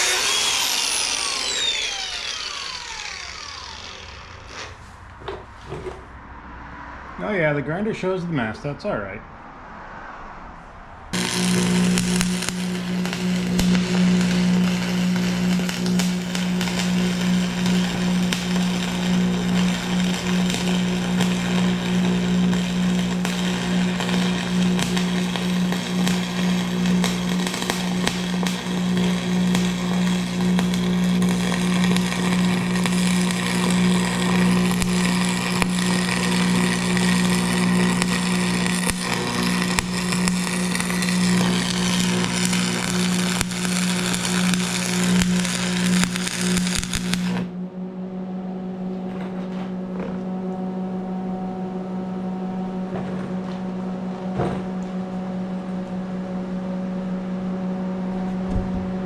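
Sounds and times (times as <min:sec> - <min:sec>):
angle grinder grinding steel: 0:00.0 - 0:04.8, 0:11.2 - 0:47.5.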